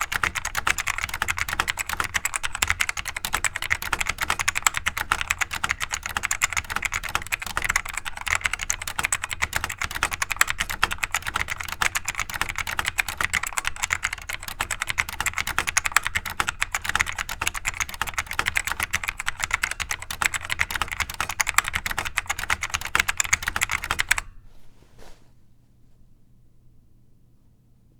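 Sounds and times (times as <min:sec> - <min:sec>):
fast clicky keyboard typing: 0:00.0 - 0:24.3.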